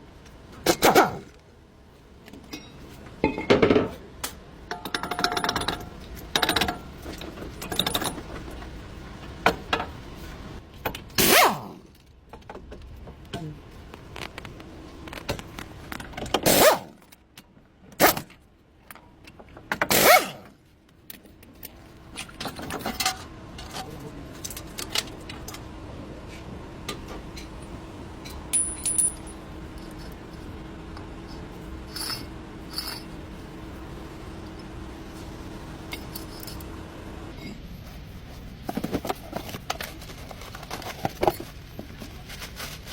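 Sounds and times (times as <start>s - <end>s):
faint steady hum: 0.0s - 42.9s
metal tools clinking: 28.4s - 30.2s, 31.9s - 33.2s.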